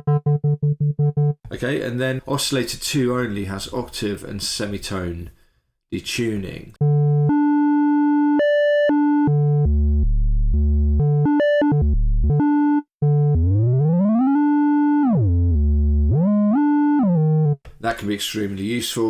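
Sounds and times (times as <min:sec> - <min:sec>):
synthesizer tone changing pitch: 0:00.0 - 0:01.4, 0:06.8 - 0:17.6.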